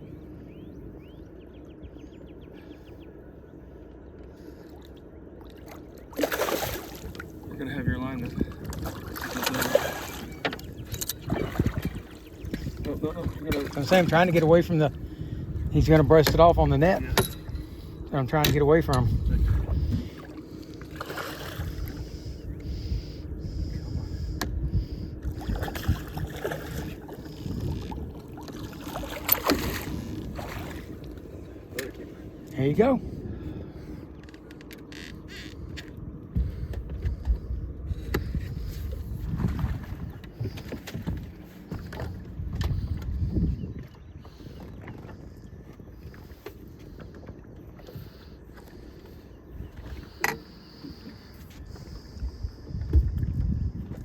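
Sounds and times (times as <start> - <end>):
bird singing: 0.0 - 6.1, 9.9 - 14.9
wind: 0.0 - 54.0
water rumbling: 4.4 - 54.0.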